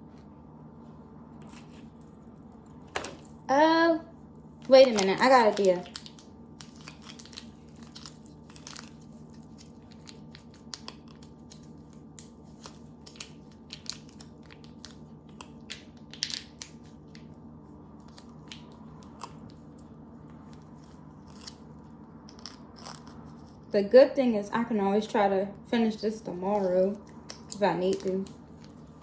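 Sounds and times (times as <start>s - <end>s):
candy pieces clicking and crunching: 4.6s - 17.2s, 22.3s - 23.4s.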